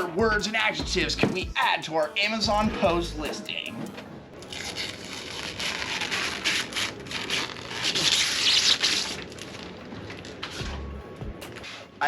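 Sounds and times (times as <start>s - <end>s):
packaging rustling and scraping: 4.4s - 10.9s.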